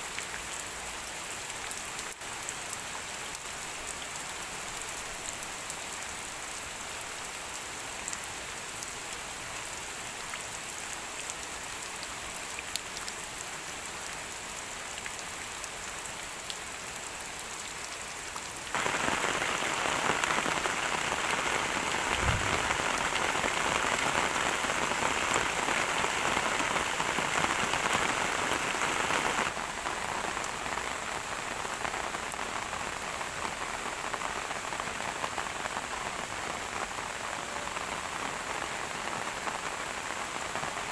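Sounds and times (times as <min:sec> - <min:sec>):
steady rain falling: 0:00.0 - 0:40.9
brief low thump: 0:22.1 - 0:22.8.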